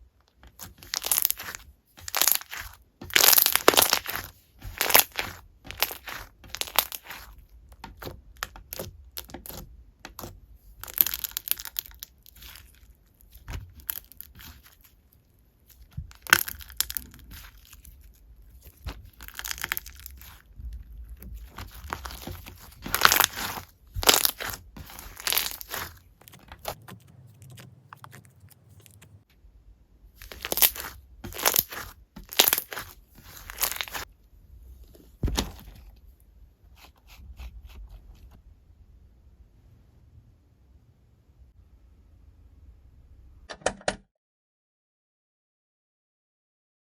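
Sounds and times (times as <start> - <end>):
slime squished by hand: 0.5 - 15.0, 15.7 - 29.2, 30.2 - 34.1.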